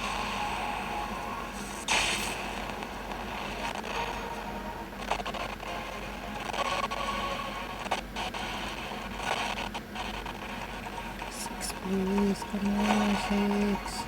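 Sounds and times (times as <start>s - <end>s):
lotto machine air rush: 0.0s - 3.8s.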